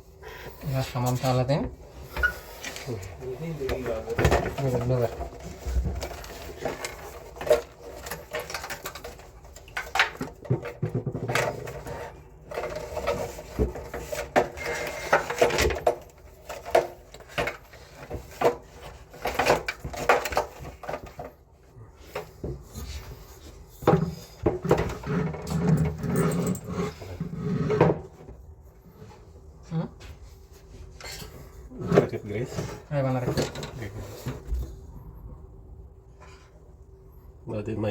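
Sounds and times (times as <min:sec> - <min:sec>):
tools and parts clicking and rattling: 0:02.2 - 0:28.3, 0:31.0 - 0:34.5.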